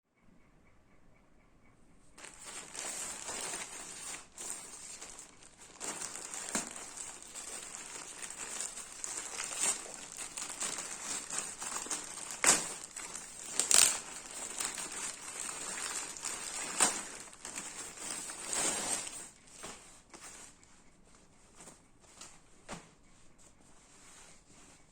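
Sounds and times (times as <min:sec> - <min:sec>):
plastic packaging crinkling: 0:02.2 - 0:20.6.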